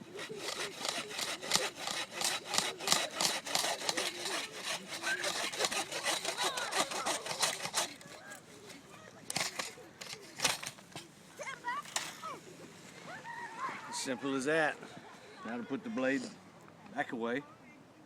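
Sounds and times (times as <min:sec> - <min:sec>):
saw cutting through tree trunk: 0:00.0 - 0:08.2.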